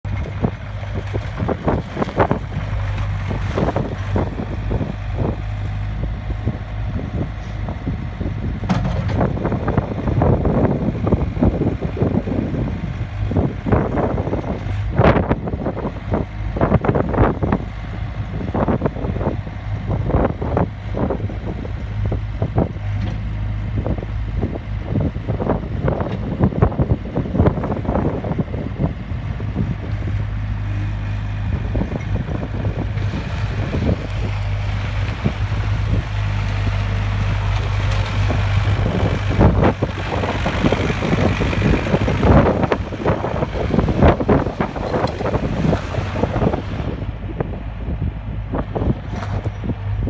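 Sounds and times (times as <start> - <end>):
skid steer engine running: 0.0 - 50.0.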